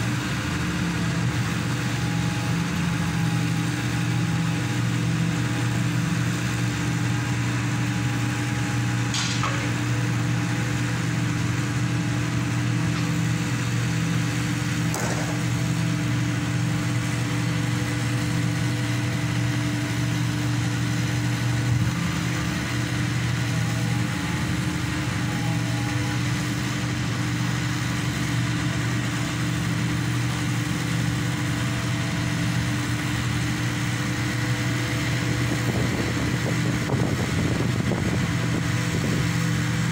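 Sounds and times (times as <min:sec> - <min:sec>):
pile driver engine droning: 0:00.0 - 0:39.9.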